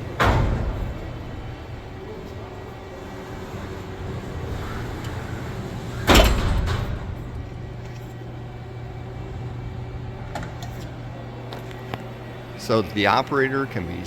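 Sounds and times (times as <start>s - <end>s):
sliding door banging shut: 0.0s - 11.1s
machine humming: 0.0s - 14.0s.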